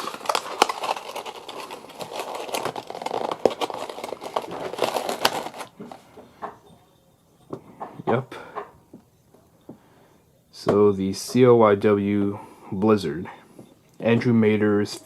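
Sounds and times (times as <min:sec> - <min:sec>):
packaging crinkling and rustling: 0:00.0 - 0:06.5.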